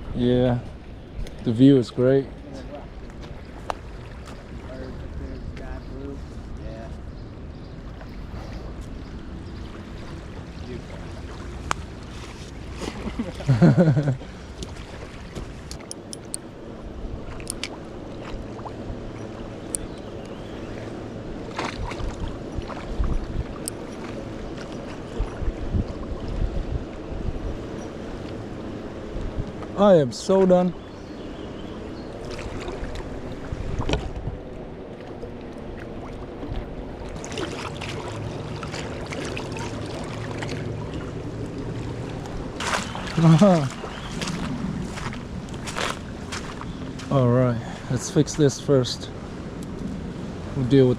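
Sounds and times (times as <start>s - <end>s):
flowing river water: 0.0s - 50.9s
wind buffeting microphone: 0.0s - 50.9s
fast-flowing river water: 35.0s - 48.0s.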